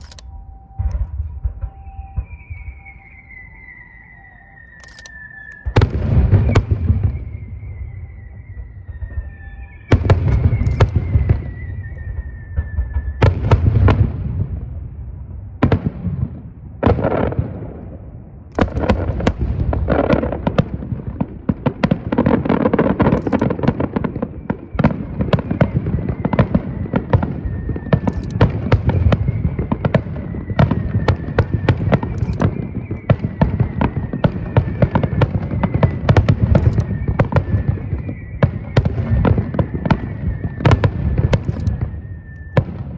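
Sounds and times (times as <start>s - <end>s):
fireworks booming: 0.0s - 3.8s, 5.6s - 42.9s
fireworks bangs and crackle: 0.7s - 3.8s, 4.6s - 42.9s.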